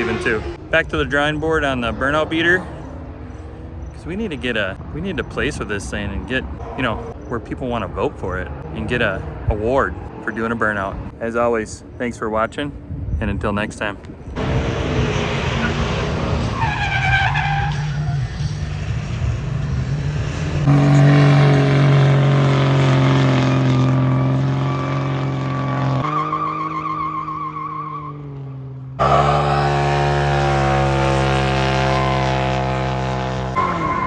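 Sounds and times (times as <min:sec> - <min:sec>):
tires squealing: 0:00.0 - 0:07.4, 0:14.4 - 0:34.0
car engines revving high: 0:00.0 - 0:11.2, 0:14.1 - 0:34.0.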